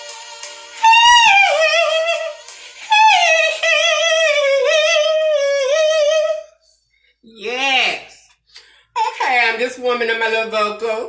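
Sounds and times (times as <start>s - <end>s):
woman singing high notes: 0.8s - 6.5s.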